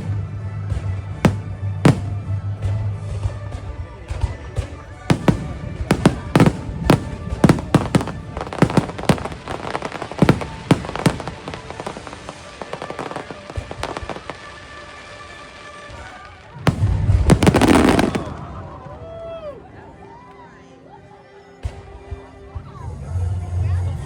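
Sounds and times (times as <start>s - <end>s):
fireworks bangs: 0.0s - 15.1s, 15.8s - 19.0s
rapid fireworks crackling: 0.0s - 19.4s
music: 0.0s - 24.0s.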